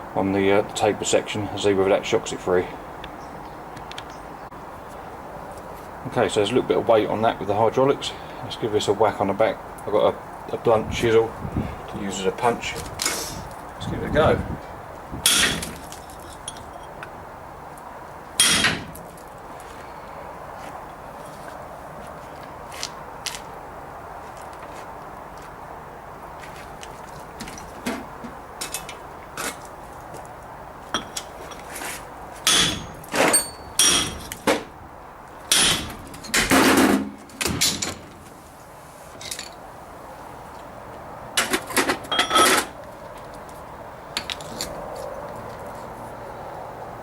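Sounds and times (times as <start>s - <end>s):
hammer striking metal chisel: 18.4s - 18.8s, 32.5s - 34.4s, 35.5s - 35.9s.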